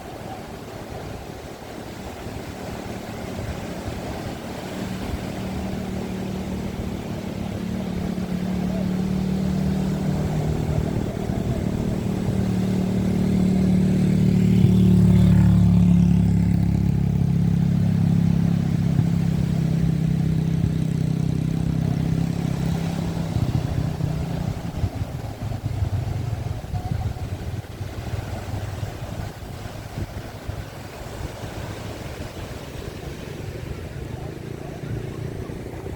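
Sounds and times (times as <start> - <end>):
motor engine running: 2.7 - 35.9.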